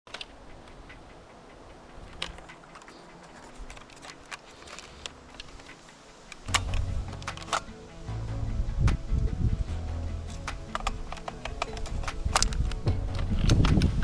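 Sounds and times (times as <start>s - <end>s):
light clicks and ticks: 0.1s - 6.5s.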